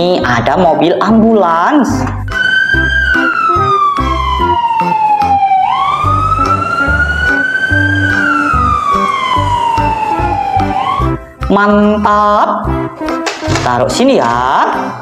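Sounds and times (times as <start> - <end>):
background music with steady beat: 0.0 - 15.0
ambulance wail siren: 2.3 - 12.1.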